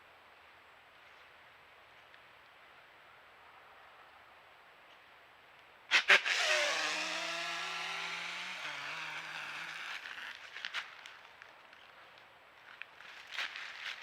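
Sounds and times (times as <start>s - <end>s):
leaves crackling: 6.5s - 14.0s.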